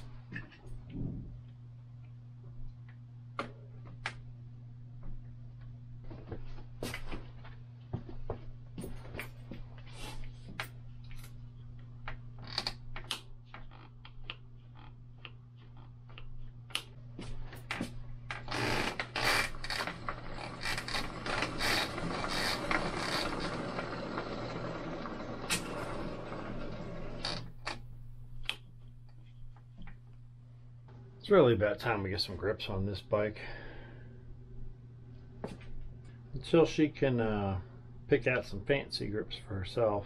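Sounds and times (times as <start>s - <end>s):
steady low hum: 0.0s - 40.0s
bicycle ratcheting rasp: 18.5s - 24.6s.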